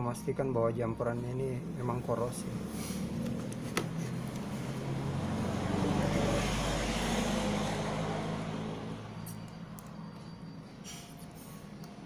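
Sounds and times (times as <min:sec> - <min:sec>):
vehicle passing by: 0:01.6 - 0:09.4.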